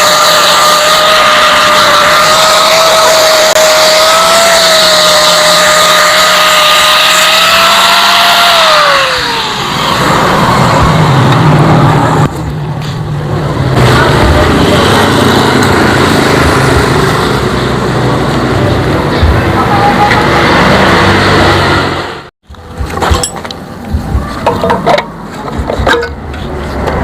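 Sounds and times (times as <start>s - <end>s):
small motor whining: 0.0s - 11.0s.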